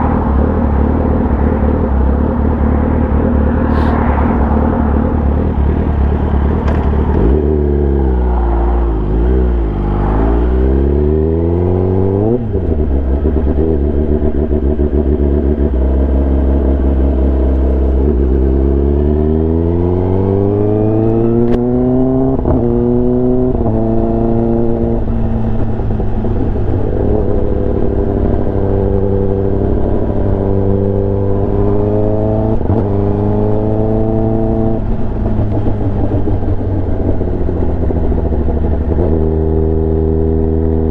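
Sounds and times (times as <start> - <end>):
motorcycle engine revving: 0.0 - 40.9
quick gear upshifts: 0.0 - 40.9.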